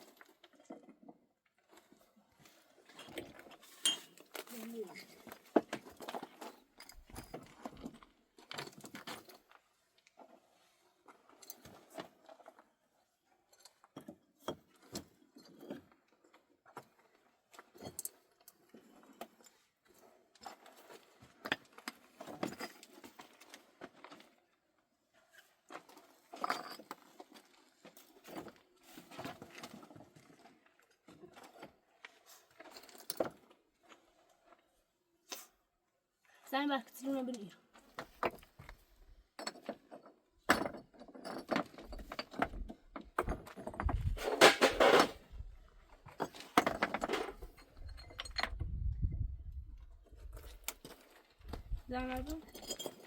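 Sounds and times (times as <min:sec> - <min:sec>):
objects clinking and scraping: 0:01.6 - 0:09.6, 0:20.3 - 0:24.4, 0:25.2 - 0:34.6, 0:39.4 - 0:45.4, 0:46.0 - 0:48.7, 0:50.2 - 0:53.0.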